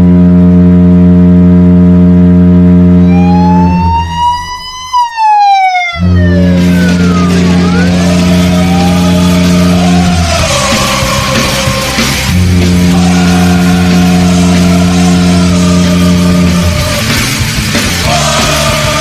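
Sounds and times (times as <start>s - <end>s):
siren rising and falling: 2.7s - 19.0s
goal song music: 3.0s - 19.0s.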